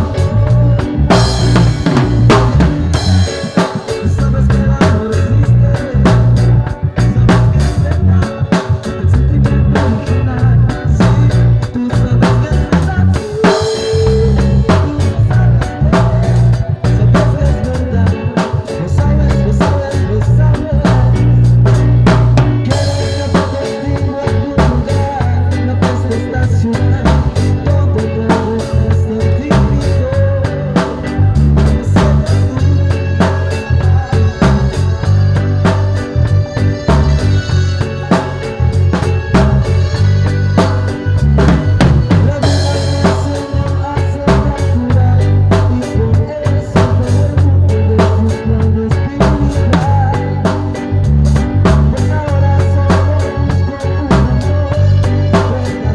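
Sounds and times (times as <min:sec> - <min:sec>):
band music: 0:00.0 - 0:55.9
drum kit steady beat: 0:00.0 - 0:55.9
heavy bass line: 0:00.0 - 0:55.9.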